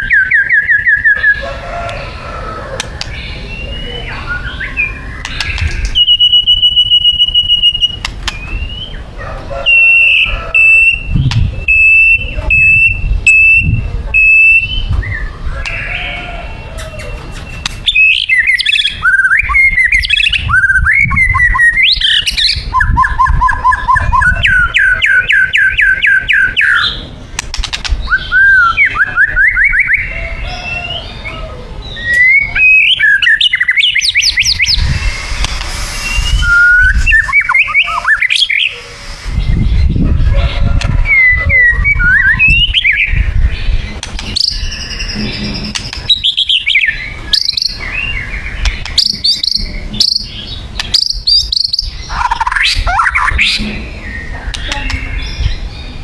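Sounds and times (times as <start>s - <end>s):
songbird singing varied song: 28.0s - 56.0s.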